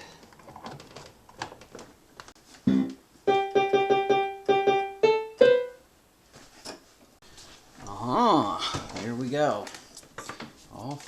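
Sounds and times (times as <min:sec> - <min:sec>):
electronic keyboard note repeating: 0:02.7 - 0:05.8.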